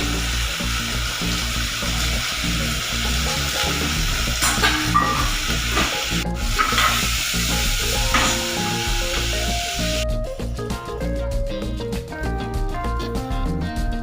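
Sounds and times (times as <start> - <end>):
pressure cooker hissing and sputtering: 0.0 - 10.0.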